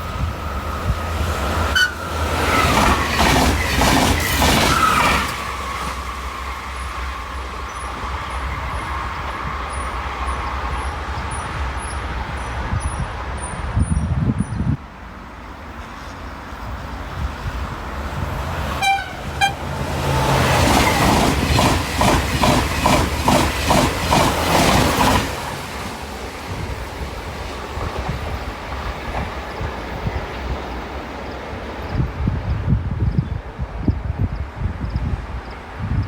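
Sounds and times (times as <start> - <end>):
train wheels clacking on rails: 0.0 - 13.8, 18.2 - 32.8
train rolling rumble: 0.0 - 36.0
train horn toot: 1.7 - 2.3, 18.7 - 20.5.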